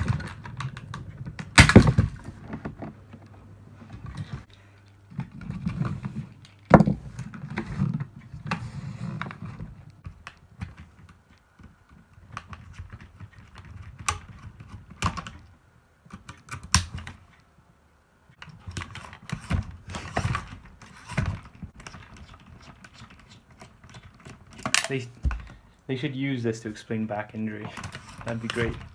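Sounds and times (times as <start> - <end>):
hard plastic toy parts clicking: 20.1 - 25.6.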